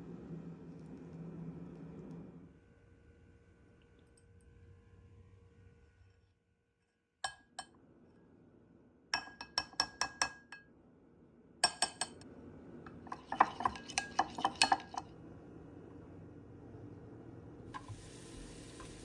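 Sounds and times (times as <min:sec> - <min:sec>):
metal utensil clinking cookware: 0:13.0 - 0:15.0.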